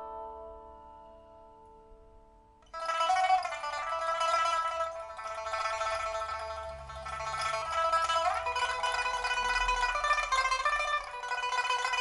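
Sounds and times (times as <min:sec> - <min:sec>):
pipa playing: 0:02.7 - 0:12.0.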